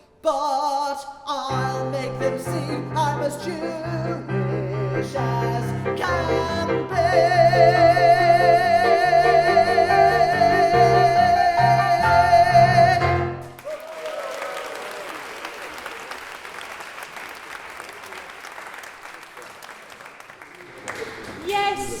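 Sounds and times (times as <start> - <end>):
audience applause: 13.4 - 22.0.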